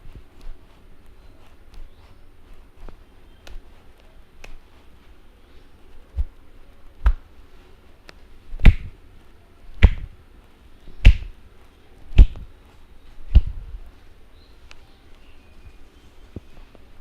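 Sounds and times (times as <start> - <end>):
hands smacking during massage: 0.0 - 5.0, 6.1 - 7.3, 8.0 - 9.0, 9.8 - 10.2, 11.0 - 11.4, 12.1 - 12.5, 13.2 - 13.8.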